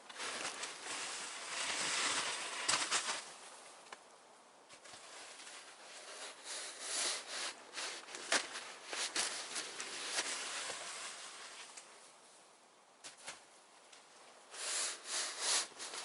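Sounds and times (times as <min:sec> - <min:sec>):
crunching and scraping in snow: 0:00.0 - 0:03.6, 0:04.7 - 0:11.8.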